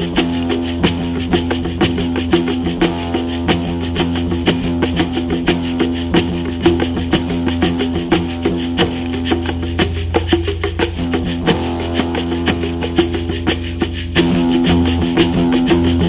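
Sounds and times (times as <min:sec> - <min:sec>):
light percussion strokes: 0:00.0 - 0:16.0.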